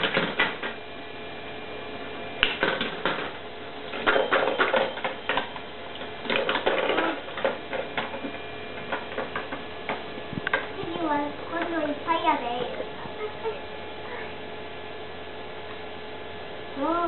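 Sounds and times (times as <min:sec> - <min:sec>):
plastic balls clattering down tracks: 0:06.3 - 0:08.2.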